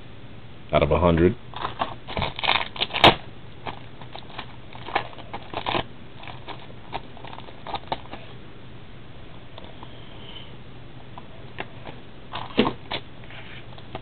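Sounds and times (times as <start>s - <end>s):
trading cards rustling and flicking: 1.6s - 8.4s.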